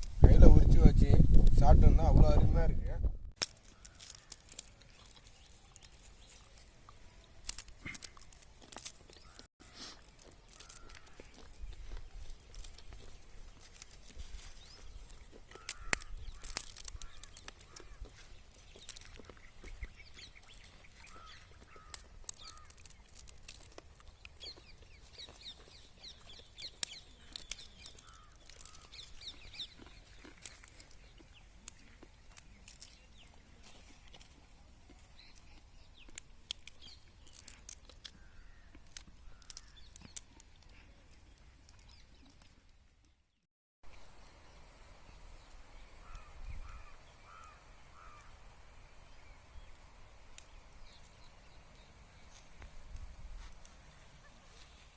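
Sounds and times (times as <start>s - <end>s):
peanut shells cracking: 3.4s - 42.6s, 49.2s - 51.6s
faint fowl calls: 46.0s - 48.4s.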